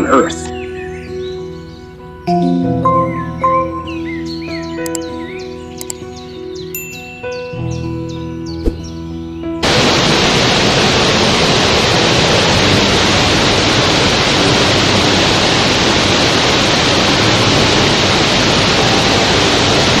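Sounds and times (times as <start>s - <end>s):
waterfall rushing: 9.6s - 20.0s.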